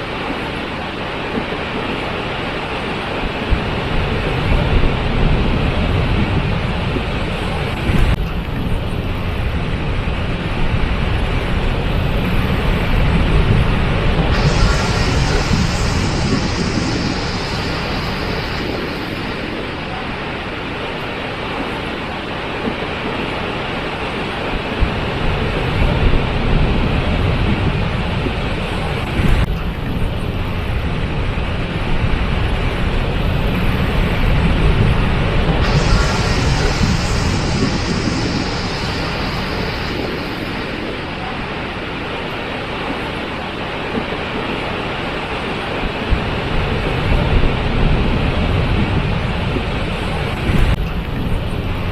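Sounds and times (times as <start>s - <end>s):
waterfall rushing: 14.3s - 21.5s, 35.6s - 43.4s.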